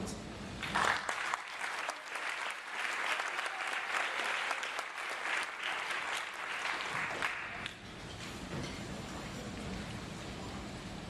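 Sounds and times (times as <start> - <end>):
audience applauding: 0.6 - 7.8.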